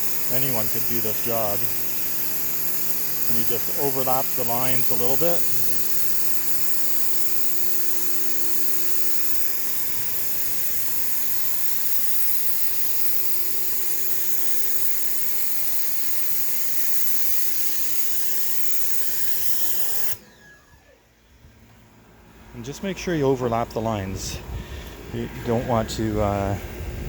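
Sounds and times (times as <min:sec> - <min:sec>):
pressure washer spraying wood: 0:00.0 - 0:20.6.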